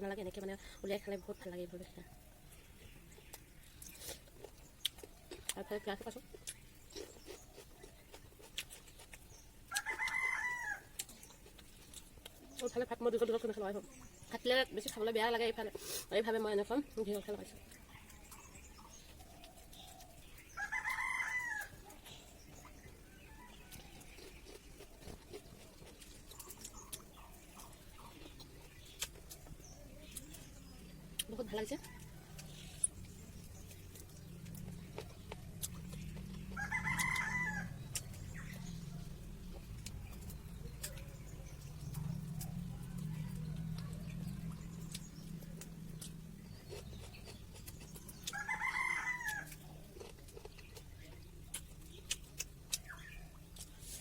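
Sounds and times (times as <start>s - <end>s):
rooster crowing: 9.7s - 11.0s, 20.6s - 22.0s, 36.3s - 38.7s, 48.2s - 49.7s
low hum: 29.4s - 48.3s.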